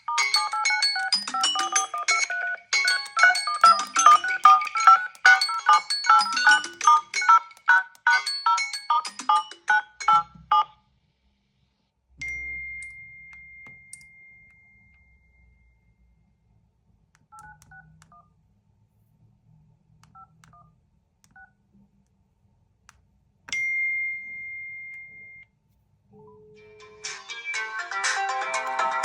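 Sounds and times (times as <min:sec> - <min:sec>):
steady high electronic beep: 0:00.0 - 0:10.7
phone keypad dialing beeps: 0:00.0 - 0:10.8, 0:17.4 - 0:18.3.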